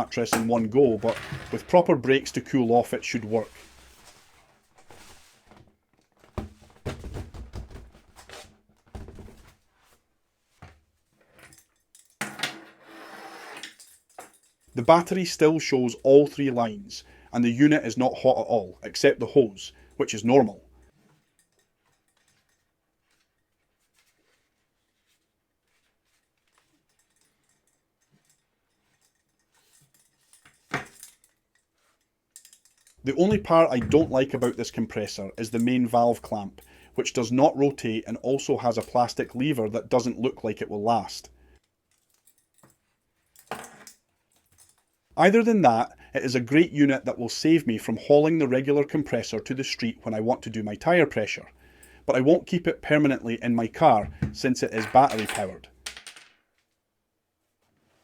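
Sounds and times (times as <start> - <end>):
knocks and clicks of handling hose: 4.9 - 9.6, 32.4 - 34.7, 53.9 - 55.5.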